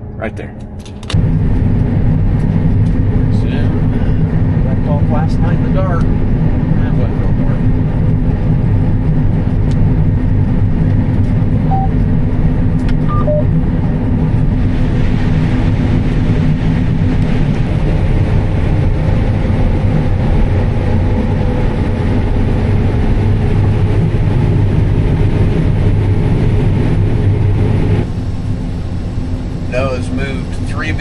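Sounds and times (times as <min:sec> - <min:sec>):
combine harvester drone: 0:00.0 - 0:31.0
short electronic beeps: 0:11.7 - 0:12.0, 0:13.0 - 0:13.5.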